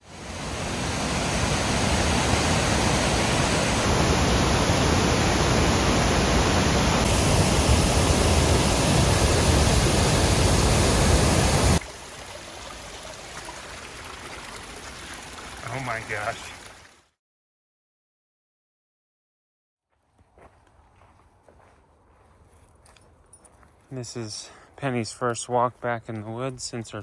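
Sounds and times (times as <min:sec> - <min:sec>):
waterfall rushing: 0:00.0 - 0:16.9
steady hiss: 0:01.4 - 0:11.8.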